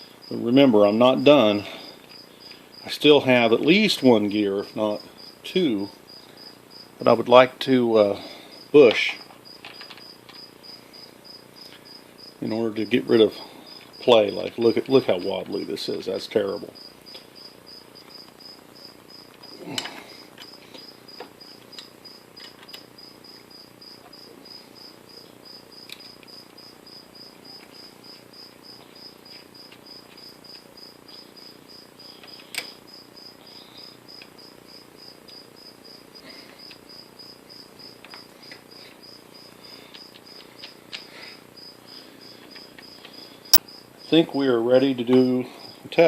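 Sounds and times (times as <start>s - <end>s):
cricket chirping: 4.9s - 7.0s, 8.3s - 15.8s, 16.4s - 44.4s.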